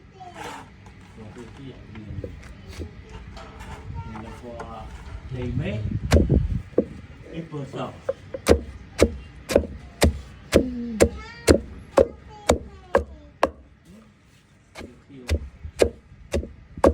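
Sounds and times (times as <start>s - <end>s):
knife chopping on cutting board: 8.4s - 13.6s, 14.8s - 16.9s.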